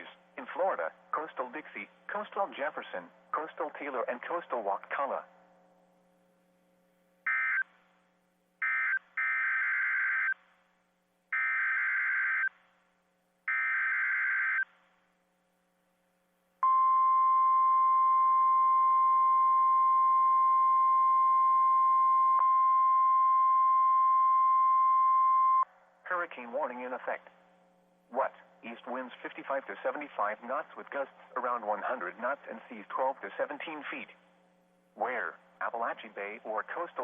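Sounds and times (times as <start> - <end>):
steady alarm tone: 7.2 - 7.8, 8.6 - 10.4, 11.3 - 12.6, 13.5 - 14.7.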